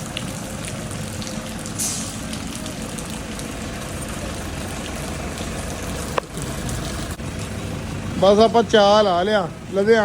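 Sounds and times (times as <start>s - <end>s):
car engine idling: 0.0s - 10.0s
short hiss: 1.8s - 2.2s.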